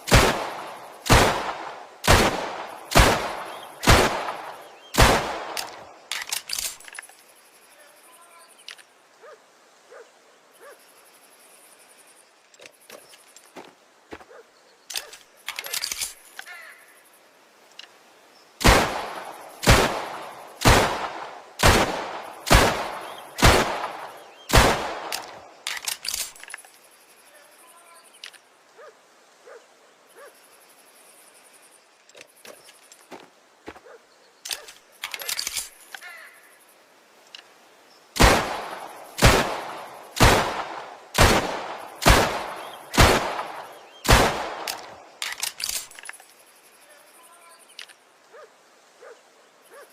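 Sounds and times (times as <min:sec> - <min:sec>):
pistol shots: 0:00.1 - 0:05.8, 0:18.6 - 0:26.4, 0:38.2 - 0:45.9
faint handling clicks: 0:05.5 - 0:07.2, 0:25.0 - 0:26.8, 0:44.6 - 0:46.4.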